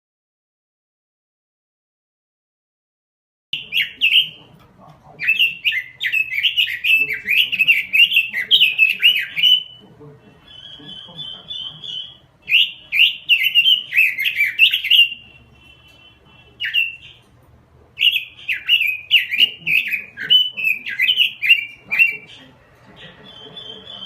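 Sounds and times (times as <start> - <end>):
bird singing fluty warbling whistles: 10.5 - 16.0.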